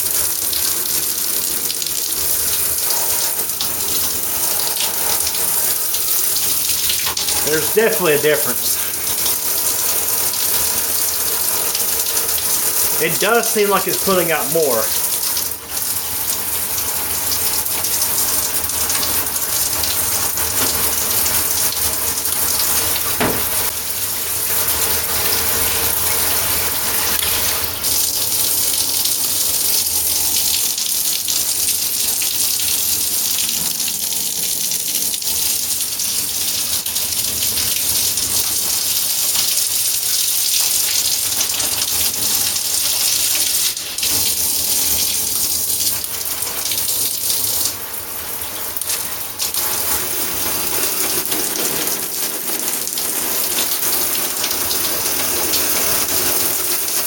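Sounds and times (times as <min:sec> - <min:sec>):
shower head spraying water: 0:12.9 - 0:15.9.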